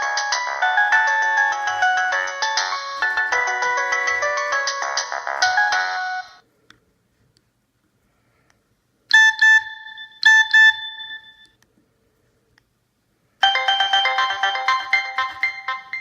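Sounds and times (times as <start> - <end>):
fast ringtone melody: 0.0 - 6.4, 9.2 - 11.4, 13.4 - 16.0
double-note phone chimes: 9.2 - 11.5, 13.4 - 16.0.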